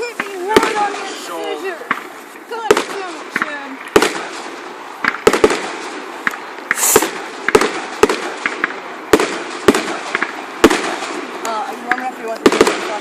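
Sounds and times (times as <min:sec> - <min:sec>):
fireworks bangs and cracks: 0:00.0 - 0:13.0
firework hiss: 0:01.9 - 0:11.7.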